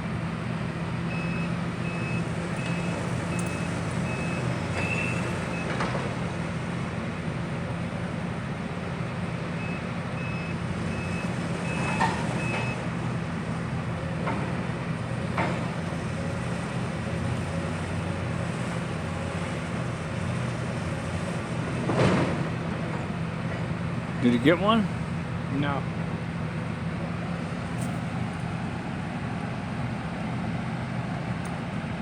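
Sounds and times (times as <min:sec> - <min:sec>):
diesel engine running: 0:00.0 - 0:32.0
reversing alarm beeping: 0:01.1 - 0:05.7, 0:09.6 - 0:12.8.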